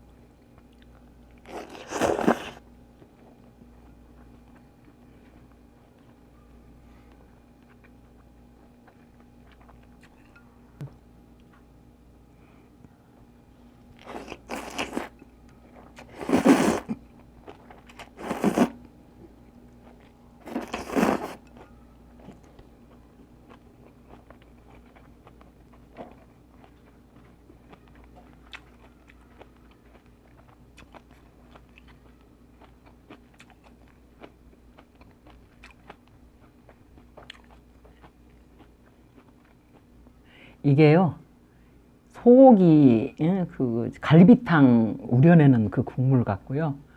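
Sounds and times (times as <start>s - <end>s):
quiet chewing with small clicks: 0.0s - 11.7s, 17.0s - 18.2s, 18.8s - 40.5s
person eating noisily: 0.7s - 2.7s, 13.9s - 18.9s, 19.8s - 39.9s.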